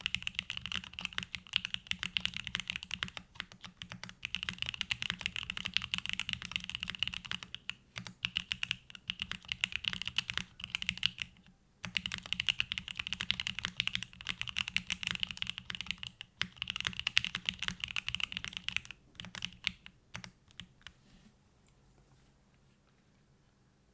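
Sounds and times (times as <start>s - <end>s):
keyboard typing: 0.0s - 21.0s.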